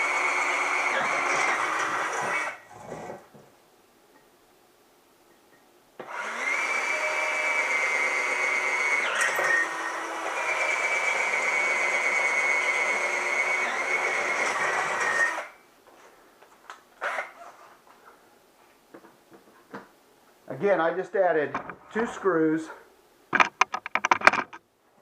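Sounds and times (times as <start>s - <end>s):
power drill boring wood: 0.0s - 2.6s, 6.0s - 15.6s.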